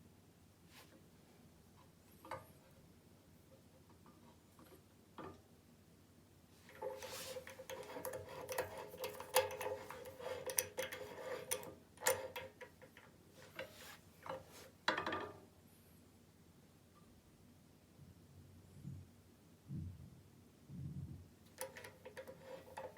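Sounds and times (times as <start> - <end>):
clicking and scraping on metal rod: 6.6 - 14.4, 21.5 - 22.9.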